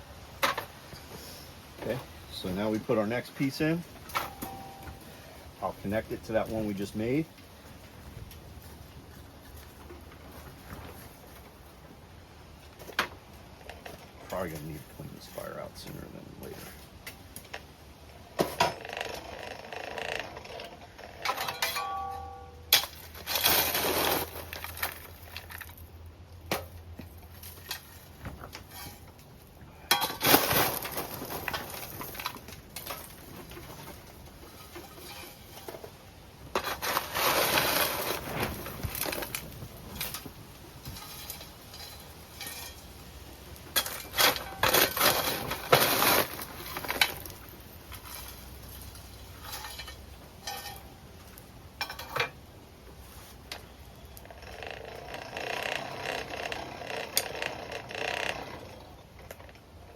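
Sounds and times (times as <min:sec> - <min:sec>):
metal tools scraping: 0:02.5 - 0:05.4, 0:18.4 - 0:25.7, 0:27.5 - 0:29.2, 0:29.8 - 0:36.0, 0:36.6 - 0:40.3, 0:40.9 - 0:42.9, 0:43.7 - 0:48.6, 0:49.3 - 0:51.0
metal tools clinking: 0:04.1 - 0:05.1, 0:21.2 - 0:25.7, 0:43.7 - 0:50.9
short metallic ring: 0:04.2 - 0:05.1, 0:21.4 - 0:22.8.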